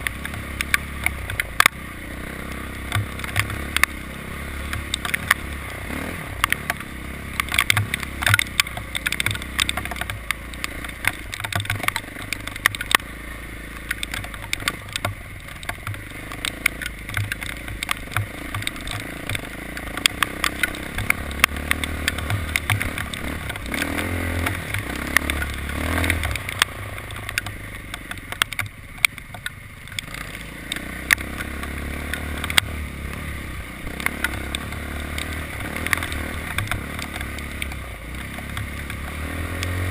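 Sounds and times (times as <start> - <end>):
vehicle engine humming: 0.0 - 39.9
short sharp clicks and knocks: 2.9 - 4.0, 6.4 - 13.1, 13.8 - 30.1, 34.0 - 39.8.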